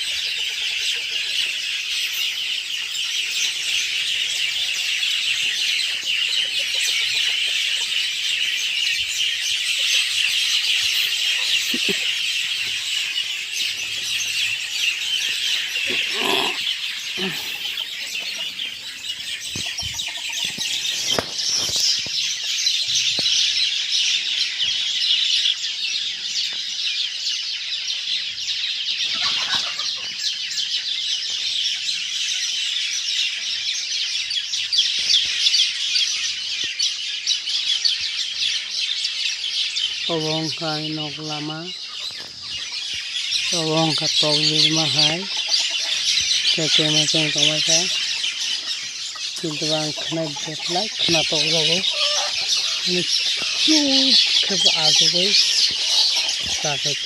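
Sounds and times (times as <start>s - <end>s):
birds chirping: 0.0s - 57.0s
short low bird calls: 10.9s - 12.8s, 13.7s - 22.2s.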